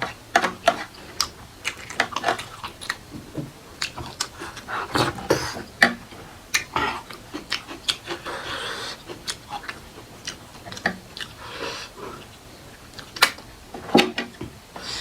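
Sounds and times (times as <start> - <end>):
wet chewing: 0.6 - 13.4
mouth clicks and lip smacks: 3.8 - 8.2
breathy slurp: 4.2 - 6.0.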